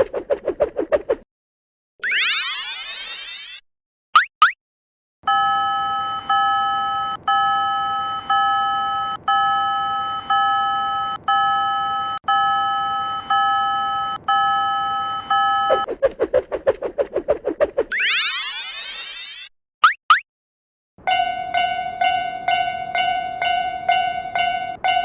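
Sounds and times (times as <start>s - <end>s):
rising chirps: 2.0s - 3.5s, 17.9s - 19.4s
level crossing warning bell: 5.3s - 15.7s, 21.0s - 25.0s
rapid fluttering warble: 15.8s - 19.2s.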